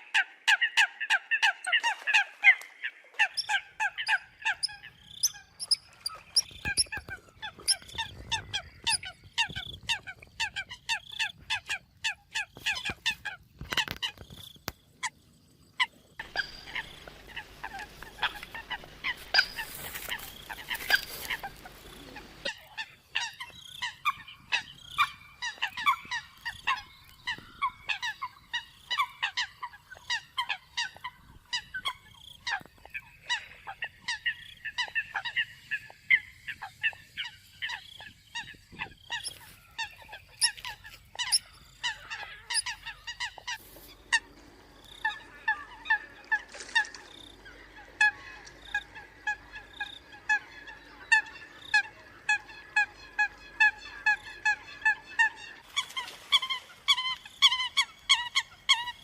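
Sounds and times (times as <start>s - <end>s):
faint steady hum: 14.5s - 56.2s
coot honking calls: 16.2s - 44.3s.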